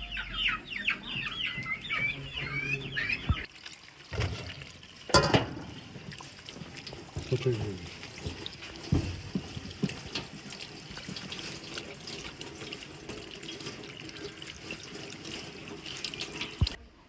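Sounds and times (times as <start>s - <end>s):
water running from a tap: 3.4s - 16.8s.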